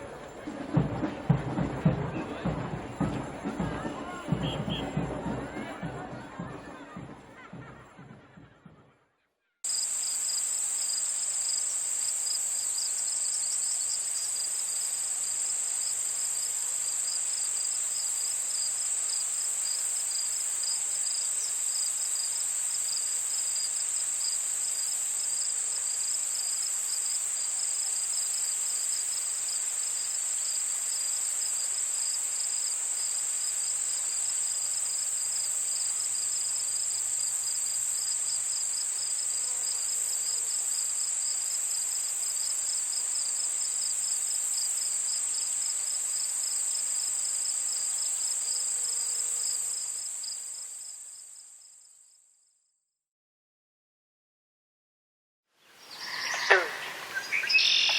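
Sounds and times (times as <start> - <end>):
insects trilling: 9.7 - 51.2, 55.8 - 57.9
insect pulsing chirp: 55.8 - 57.9.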